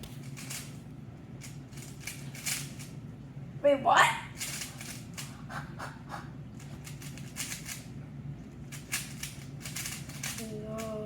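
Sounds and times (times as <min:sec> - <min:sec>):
speed cube clicking and scraping: 0:00.0 - 0:00.8, 0:01.4 - 0:03.0, 0:04.4 - 0:05.5, 0:06.6 - 0:07.9, 0:08.6 - 0:11.0.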